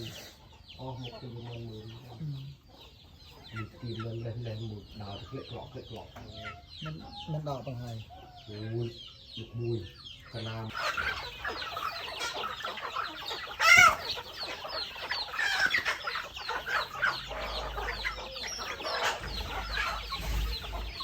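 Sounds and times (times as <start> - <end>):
chickens clucking: 0.0 - 21.0
loud chicken call: 10.7 - 21.0.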